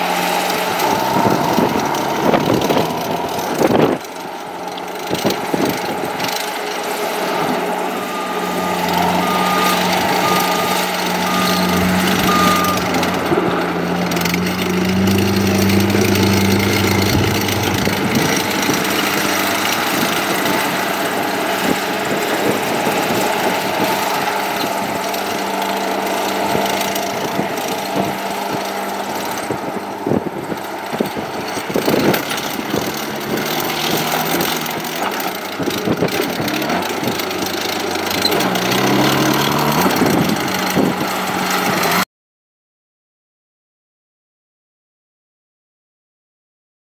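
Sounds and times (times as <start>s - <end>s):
diesel engine running: 0.0s - 42.0s
backup alarm beeping: 8.0s - 13.4s.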